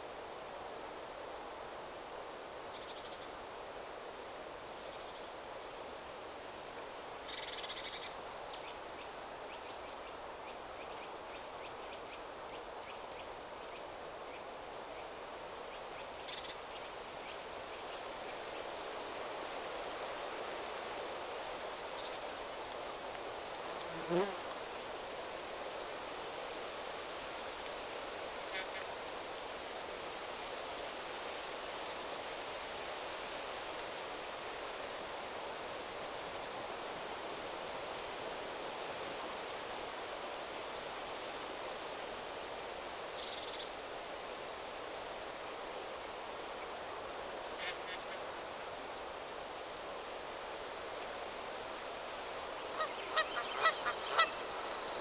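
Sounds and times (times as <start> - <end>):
wind rustling through trees: 0.0 - 55.0
water birds calling: 52.7 - 55.0.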